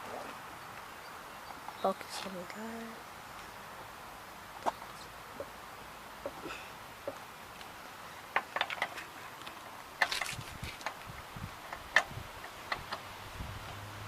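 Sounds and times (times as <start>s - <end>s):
sharp clicks and light knocks: 8.3s - 11.1s, 11.7s - 13.0s.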